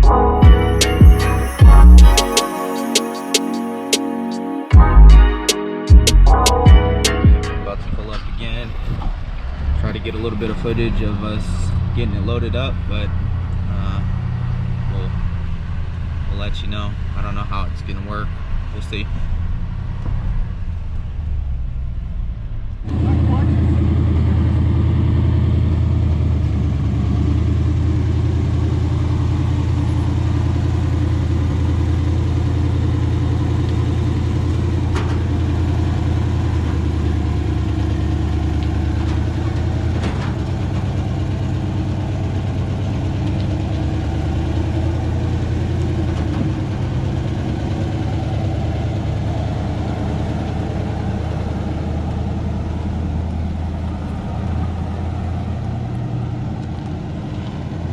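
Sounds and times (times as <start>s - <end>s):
vehicle engine running: 6.7s - 57.9s.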